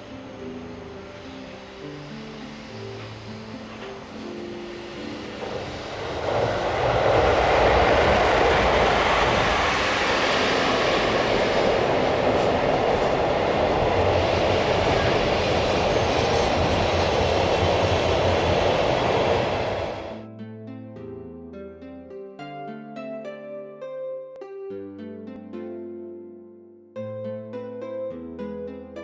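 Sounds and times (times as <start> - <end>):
freight train passing: 0.0 - 20.2.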